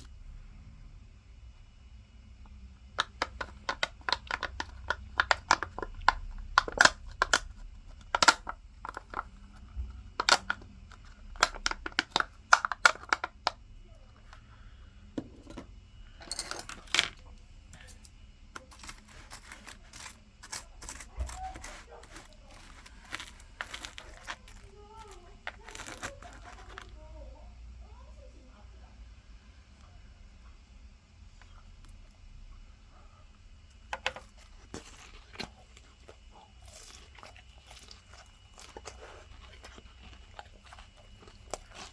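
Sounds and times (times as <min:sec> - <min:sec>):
plastic crumpling and tearing: 0:18.6 - 0:27.0
plastic packaging crinkling: 0:18.6 - 0:27.0, 0:33.9 - 0:41.9.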